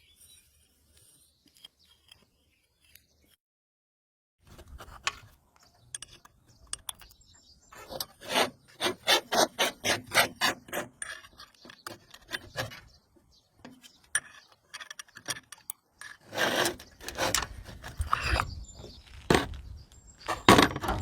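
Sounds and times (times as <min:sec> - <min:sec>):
scraping strokes: 0:07.8 - 0:12.9, 0:16.0 - 0:21.0.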